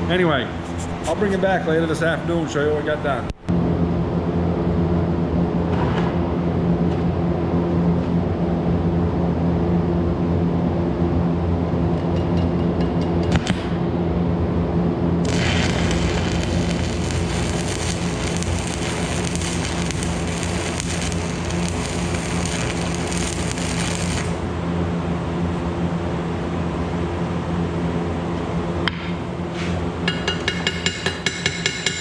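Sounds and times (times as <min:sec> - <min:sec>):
welding arc crackling: 0:15.2 - 0:24.6
welding machine hum: 0:15.2 - 0:24.6.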